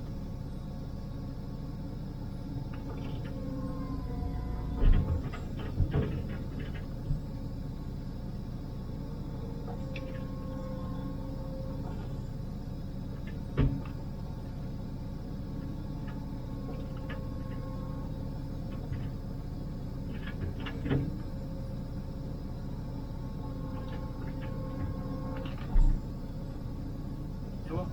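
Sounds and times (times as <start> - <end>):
excavator diesel engine and hydraulics: 0.0 - 27.9.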